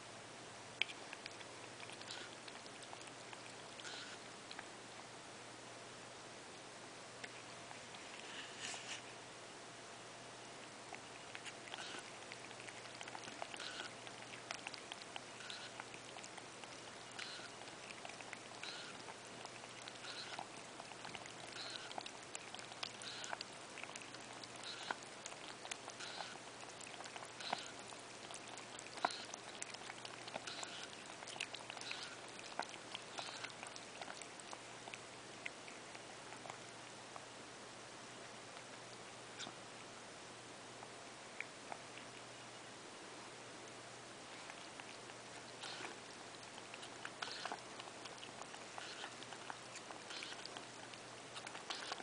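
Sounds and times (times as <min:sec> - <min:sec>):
cat lapping water: 0:00.8 - 0:04.7, 0:10.8 - 0:37.3, 0:44.3 - 0:52.0.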